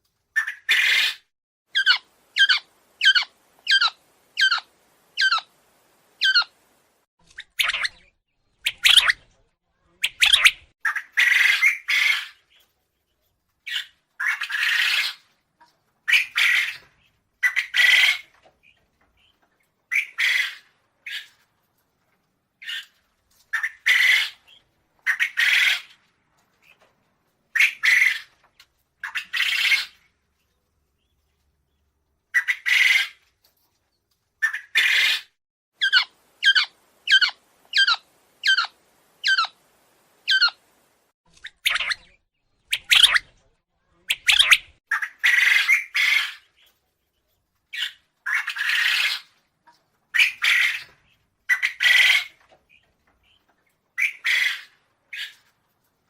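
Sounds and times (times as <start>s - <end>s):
quail calling: 0.4s - 5.5s, 6.2s - 6.5s, 34.4s - 39.6s, 40.3s - 40.6s, 42.7s - 43.3s, 54.0s - 55.4s.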